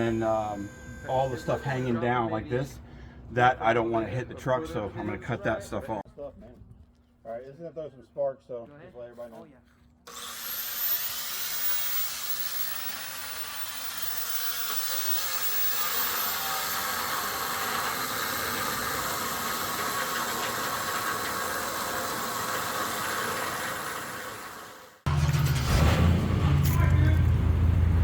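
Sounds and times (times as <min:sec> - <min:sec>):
angle grinder cutting steel: 0:00.0 - 0:02.2, 0:10.1 - 0:25.1.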